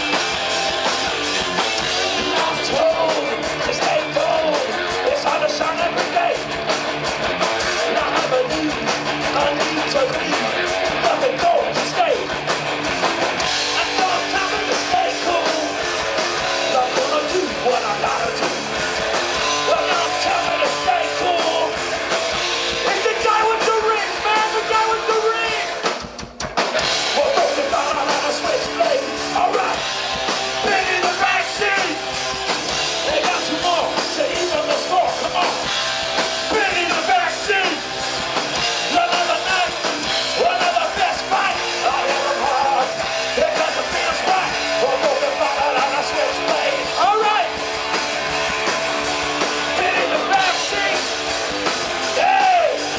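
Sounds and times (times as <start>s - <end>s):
live punk rock band: 0.0s - 52.9s
person singing: 2.0s - 6.4s, 7.7s - 12.3s, 13.8s - 15.8s, 16.6s - 18.6s, 19.5s - 21.8s, 22.8s - 25.8s, 27.1s - 29.9s, 30.6s - 32.0s, 38.8s - 47.6s, 49.7s - 51.1s, 52.1s - 52.9s.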